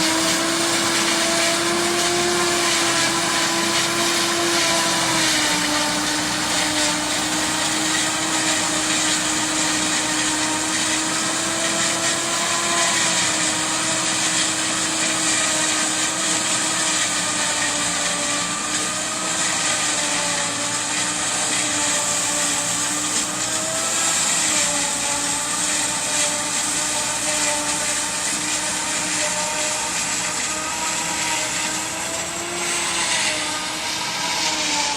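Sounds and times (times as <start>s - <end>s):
forage harvester mechanical whine: 0.0s - 34.9s.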